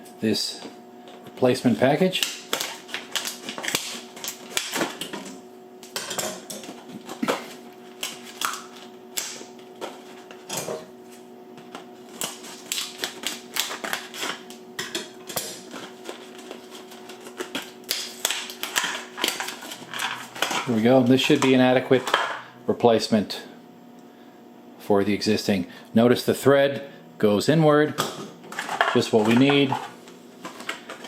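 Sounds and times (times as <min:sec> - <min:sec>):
faint steady hum: 0:00.0 - 0:31.0
plastic packaging clicks and crinkles: 0:02.1 - 0:10.6, 0:12.1 - 0:21.5.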